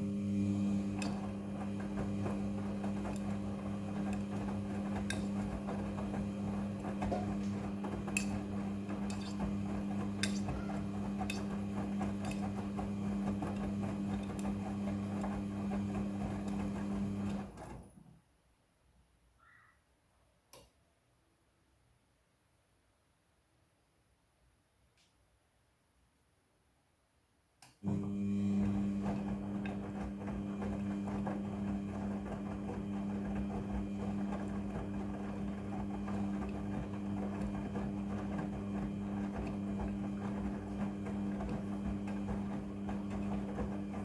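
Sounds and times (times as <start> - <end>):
washing machine humming: 0.0 - 18.0, 27.8 - 44.0
faint click: 20.5 - 20.7.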